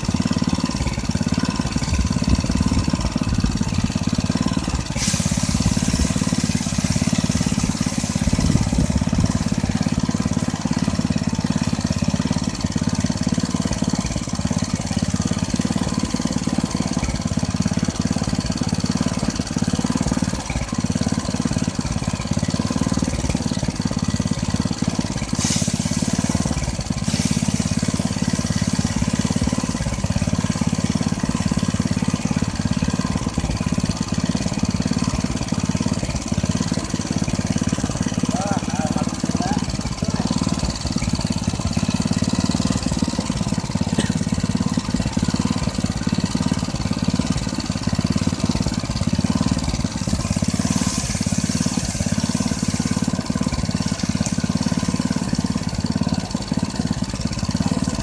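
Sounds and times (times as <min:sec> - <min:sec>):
threshing machine droning: 0:00.0 - 0:58.0
brief hisses: 0:05.0 - 0:08.2, 0:25.4 - 0:27.8.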